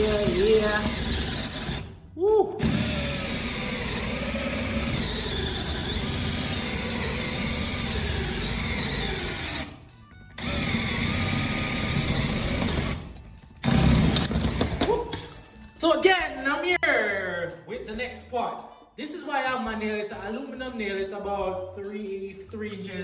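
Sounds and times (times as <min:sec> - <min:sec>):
electric drill drilling metal: 0:00.0 - 0:01.9, 0:02.6 - 0:09.8, 0:10.4 - 0:14.9.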